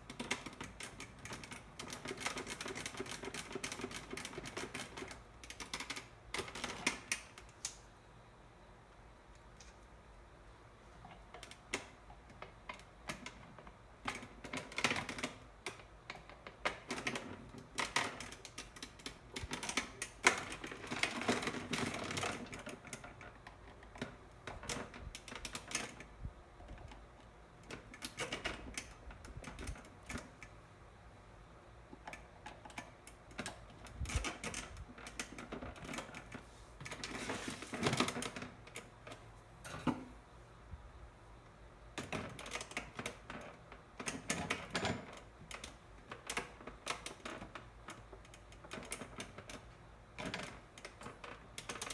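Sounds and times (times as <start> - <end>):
plastic fan parts clattering: 33.4 - 38.9.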